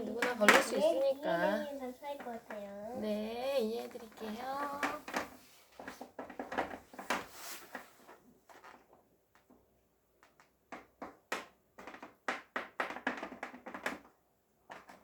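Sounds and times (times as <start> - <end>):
small objects tapping on a table: 0.1 - 1.0, 4.1 - 7.3, 10.2 - 15.0.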